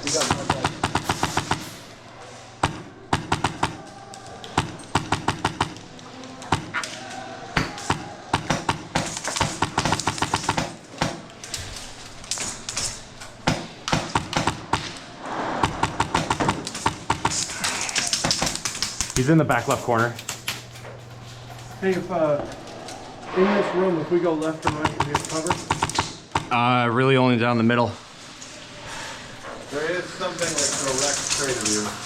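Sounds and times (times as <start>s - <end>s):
airsoft guns firing bursts: 0.0s - 1.8s, 7.6s - 11.3s, 15.6s - 19.3s.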